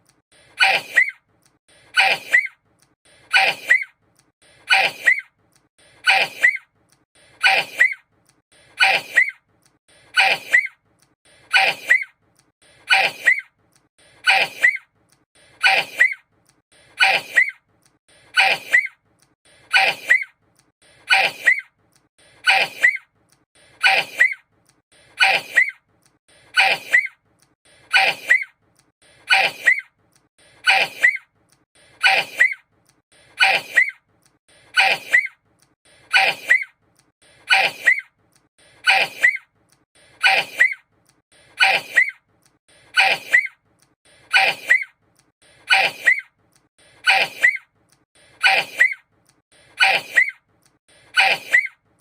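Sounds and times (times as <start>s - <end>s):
sneeze with rising squeak: 0.6s - 1.2s, 1.9s - 2.5s, 3.3s - 3.9s, 4.7s - 5.2s, 6.0s - 6.6s, 7.4s - 8.0s, 8.8s - 9.4s, 10.1s - 10.7s, 11.5s - 12.1s, 12.9s - 13.4s, 14.2s - 14.8s, 15.6s - 16.2s, 17.0s - 17.6s, 18.3s - 18.9s, 19.7s - 20.3s, 21.1s - 21.6s, 22.4s - 23.0s, 25.2s - 25.8s, 26.5s - 27.1s, 27.9s - 28.5s, 29.3s - 29.8s, 30.6s - 31.2s, 32.0s - 32.6s, 33.4s - 34.0s, 34.7s - 35.3s, 36.1s - 36.7s, 37.5s - 38.0s, 38.8s - 39.4s, 40.2s - 40.8s, 41.6s - 42.2s, 42.9s - 43.5s, 44.3s - 44.9s, 45.7s - 46.2s, 47.0s - 47.6s, 48.4s - 49.0s, 49.8s - 50.3s, 51.1s - 51.8s.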